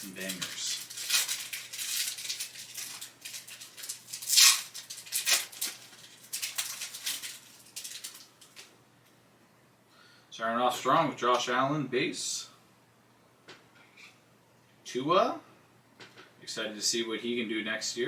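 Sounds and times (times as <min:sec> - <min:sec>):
cards rustling: 0:00.0 - 0:08.7
plastic wrapper tearing and crinkling: 0:00.0 - 0:08.7.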